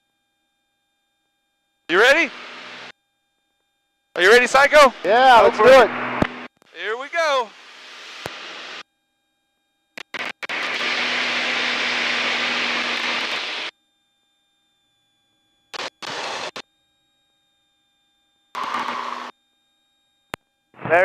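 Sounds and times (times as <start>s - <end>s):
faint intercom tone: 4.2s - 6.0s, 20.8s - 21.0s
aircraft engine and wind rush: 4.2s - 6.4s.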